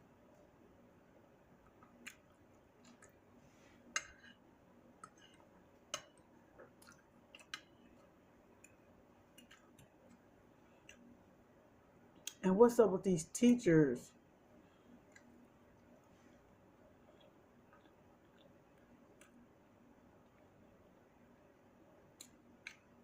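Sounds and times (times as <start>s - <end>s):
person chewing food: 1.6s - 3.4s, 4.0s - 11.1s, 14.8s - 20.6s.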